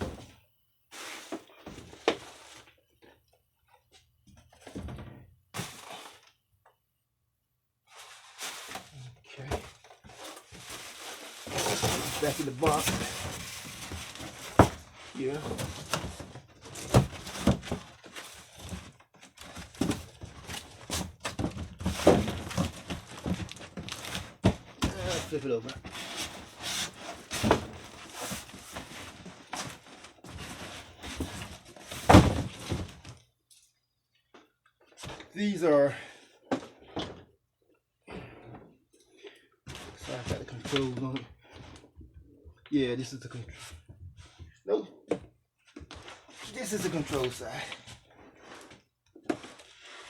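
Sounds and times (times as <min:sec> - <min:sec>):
cardboard box rustling and scraping: 0:09.6 - 0:33.2.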